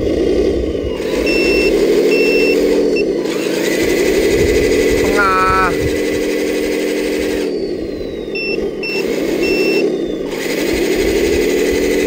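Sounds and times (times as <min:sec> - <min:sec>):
radio-controlled truck motor: 0:00.0 - 0:12.0
short high beeps: 0:01.0 - 0:03.1, 0:08.4 - 0:09.9.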